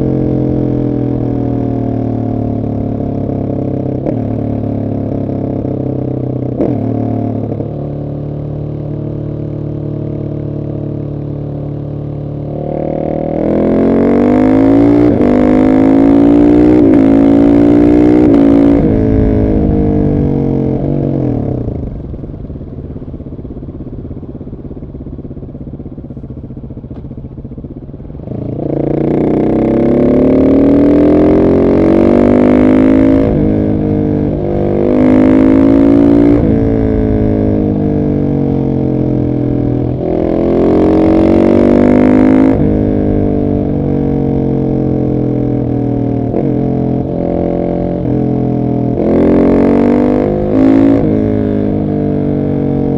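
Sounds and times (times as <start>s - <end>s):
motorcycle engine revving: 0.0s - 52.9s.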